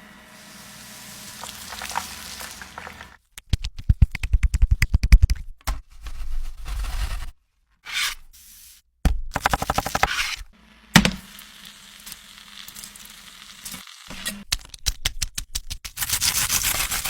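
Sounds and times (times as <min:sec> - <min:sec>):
cooking utensils scraping: 0:00.6 - 0:03.2.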